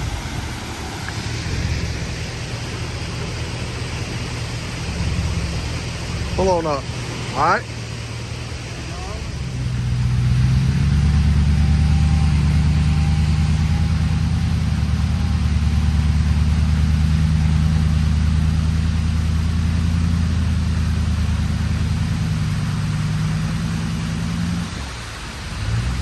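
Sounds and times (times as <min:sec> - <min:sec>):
vehicle engine droning at low revs: 0:00.0 - 0:26.0.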